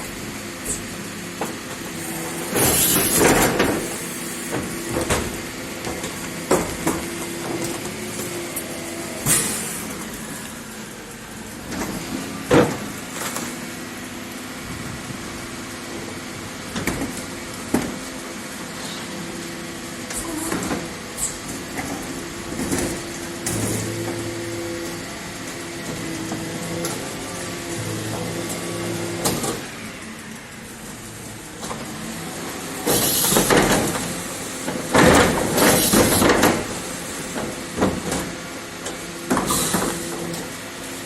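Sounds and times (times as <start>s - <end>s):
garbage truck engine running: 0.0s - 41.0s.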